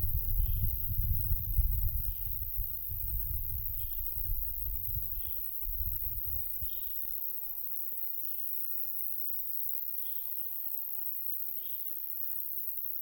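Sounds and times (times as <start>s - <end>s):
wind rumbling on microphone: 0.0s - 6.9s
insects chirring: 0.0s - 13.0s.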